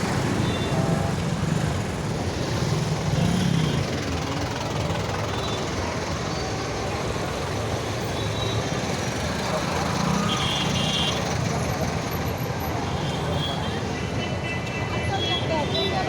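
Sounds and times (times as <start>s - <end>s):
road traffic: 0.0s - 16.0s.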